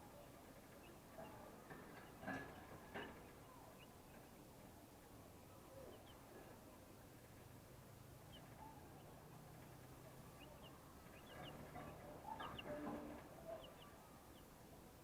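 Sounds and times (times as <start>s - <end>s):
chicks peeping: 0.5s - 4.5s, 5.8s - 6.6s, 8.2s - 14.6s.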